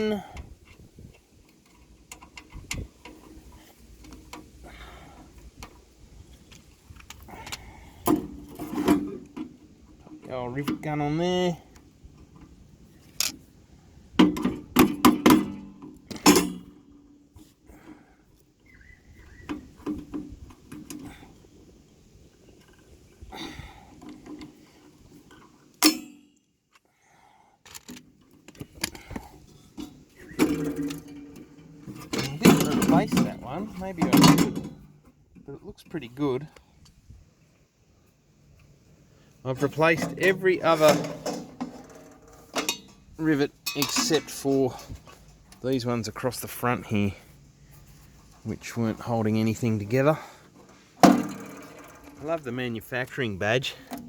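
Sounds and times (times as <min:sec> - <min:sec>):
metal clicks and clinks: 0:43.6 - 0:44.9.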